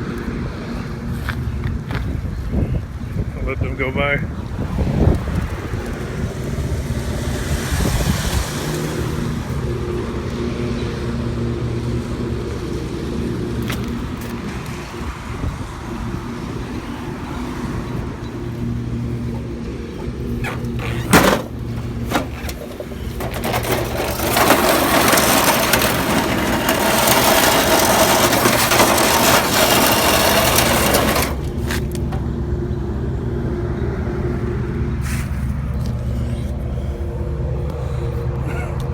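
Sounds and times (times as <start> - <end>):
vehicle engine idling: 9.0 - 38.9.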